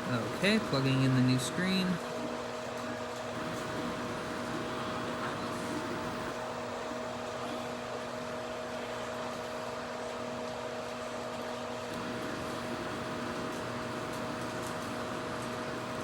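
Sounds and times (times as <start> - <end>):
bench equipment humming: 0.0 - 7.6, 11.8 - 16.0.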